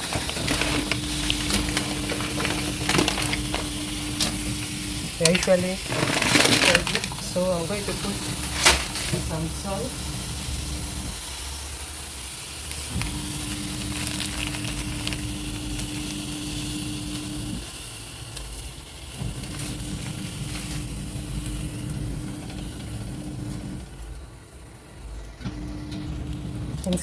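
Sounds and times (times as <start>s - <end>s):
stirring clicks: 0.0s - 9.4s
food sizzling in pan: 0.0s - 27.0s
steady low hum: 0.0s - 27.0s.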